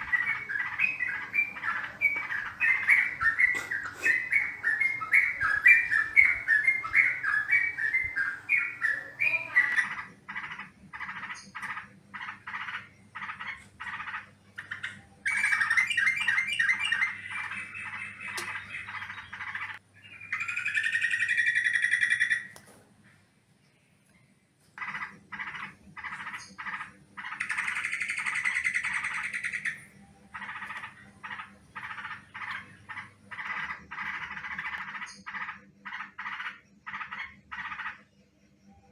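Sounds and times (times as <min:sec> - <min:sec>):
bird harsh chattering call: 0:00.0 - 0:11.4.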